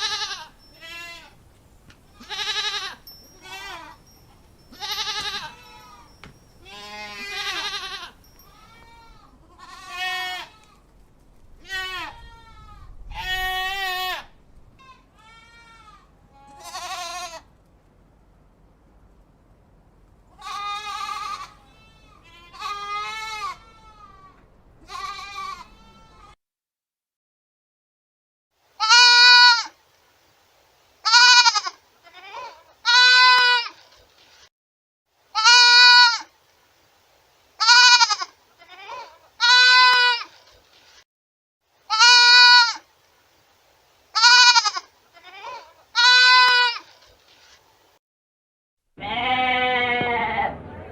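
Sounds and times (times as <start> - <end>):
goat bleating: 0.0 - 1.4, 2.1 - 4.0, 4.7 - 10.8, 11.6 - 17.5, 20.3 - 26.4, 28.8 - 29.8, 31.0 - 33.9, 35.3 - 36.3, 37.6 - 40.5, 41.9 - 42.8, 44.1 - 47.0, 49.0 - 50.9.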